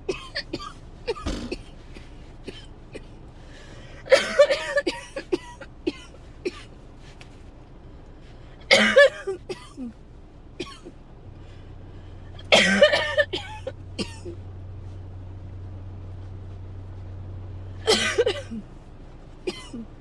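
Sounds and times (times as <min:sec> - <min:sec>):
dry coughing: 0:00.1 - 0:03.2, 0:04.0 - 0:06.8, 0:08.7 - 0:10.0, 0:10.6 - 0:11.0, 0:12.4 - 0:14.4, 0:17.8 - 0:18.6, 0:19.4 - 0:19.9
throat catches: 0:01.2 - 0:01.7.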